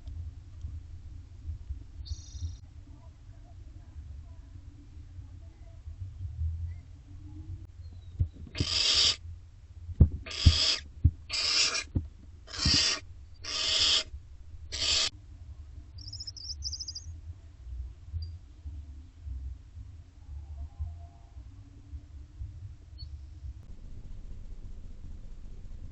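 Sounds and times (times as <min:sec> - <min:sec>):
owlets hissing screech calls: 0:08.6 - 0:09.2, 0:10.3 - 0:11.9, 0:12.5 - 0:14.1, 0:14.7 - 0:15.1.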